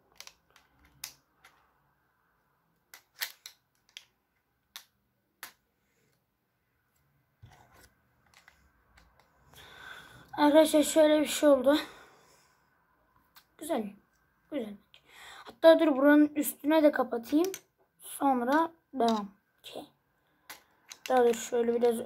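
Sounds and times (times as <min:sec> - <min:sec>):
plastic bricks clicking: 0:00.1 - 0:01.7, 0:02.9 - 0:05.6, 0:08.2 - 0:09.3, 0:17.2 - 0:17.7, 0:18.5 - 0:19.3, 0:20.4 - 0:22.0.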